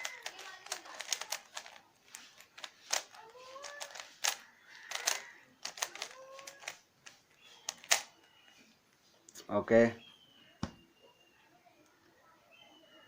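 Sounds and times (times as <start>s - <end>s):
puzzle cube clicking: 0.0s - 8.2s.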